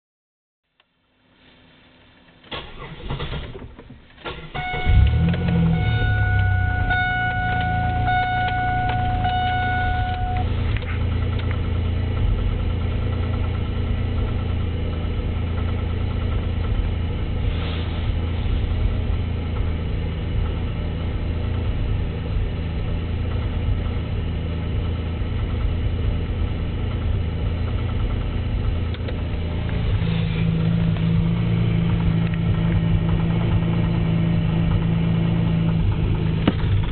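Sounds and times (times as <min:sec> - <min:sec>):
car engine cranking and starting: 0:02.0 - 0:36.9
engine idling with knock: 0:03.9 - 0:36.9
warning chime beeping: 0:04.6 - 0:10.5.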